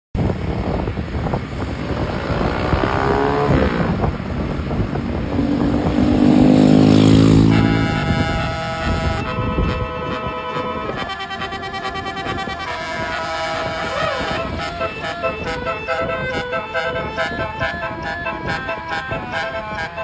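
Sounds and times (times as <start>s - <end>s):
bus engine passing by: 0.2s - 20.0s
multi-tone air horn chord: 7.0s - 20.0s.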